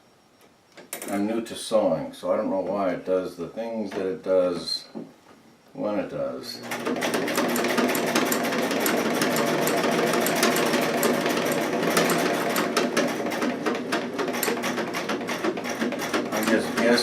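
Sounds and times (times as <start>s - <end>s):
sewing machine stitching fast: 6.6s - 17.0s.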